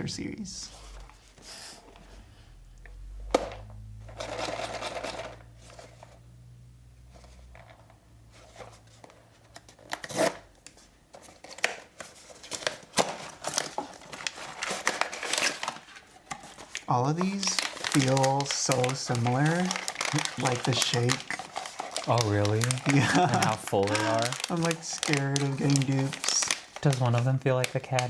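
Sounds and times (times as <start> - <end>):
cardboard rustling: 7.1 - 28.0
clicks taps and crinkles: 8.6 - 28.0.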